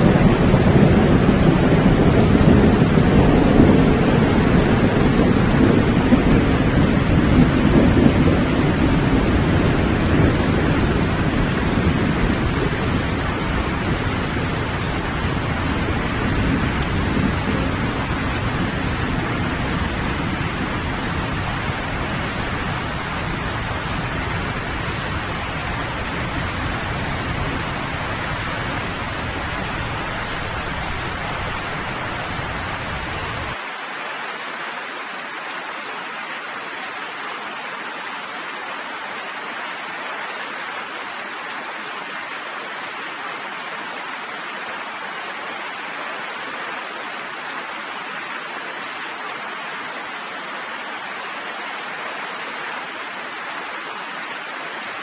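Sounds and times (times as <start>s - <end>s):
low thunder rumble: 0.0s - 33.6s
heavy rain falling: 0.0s - 55.0s.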